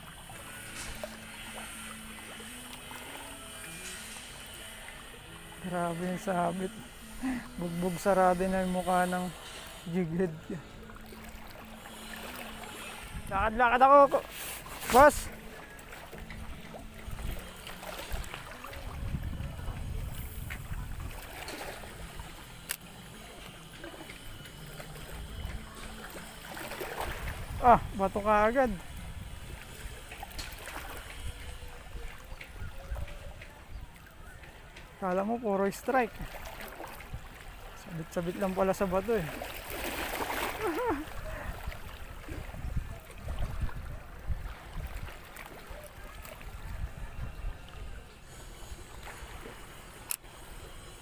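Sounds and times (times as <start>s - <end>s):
water lapping among rocks: 0.0s - 51.0s
wind rumble on microphone: 13.0s - 13.6s, 16.2s - 22.3s, 27.0s - 34.0s, 40.6s - 45.3s, 46.0s - 49.4s.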